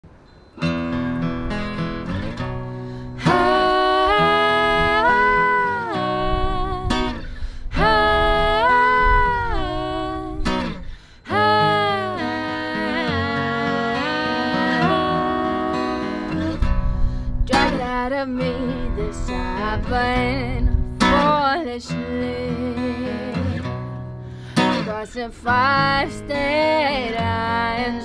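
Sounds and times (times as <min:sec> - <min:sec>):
acoustic guitar strumming: 0:00.2 - 0:28.0
sliding melody line: 0:03.2 - 0:07.1.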